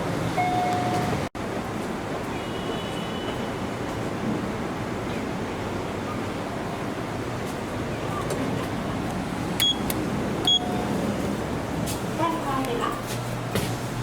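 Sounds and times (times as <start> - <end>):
hum of traffic: 0.0 - 14.0.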